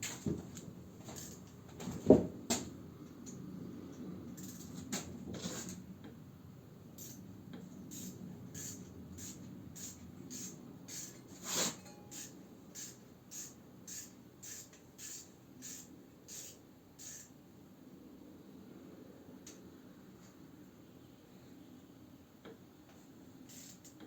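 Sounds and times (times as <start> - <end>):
ratchet wrench clicking: 4.4 - 4.7, 7.0 - 7.2, 7.9 - 11.3, 12.1 - 17.4, 23.5 - 24.0.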